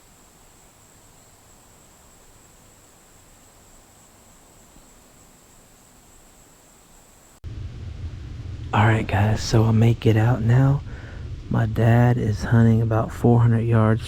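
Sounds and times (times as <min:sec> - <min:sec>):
high-pitched insect drone: 0:00.0 - 0:07.4
low background hiss: 0:00.0 - 0:14.0.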